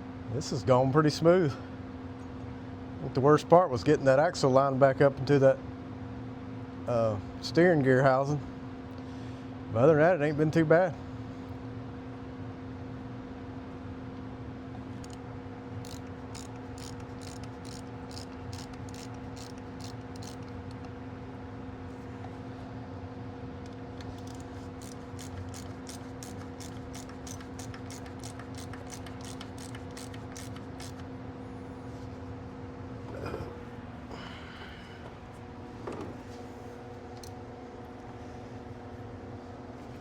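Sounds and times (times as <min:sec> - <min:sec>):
steady hum: 0:00.0 - 0:40.0
ratchet wrench clicking: 0:15.0 - 0:15.2, 0:15.8 - 0:20.9, 0:24.1 - 0:31.1.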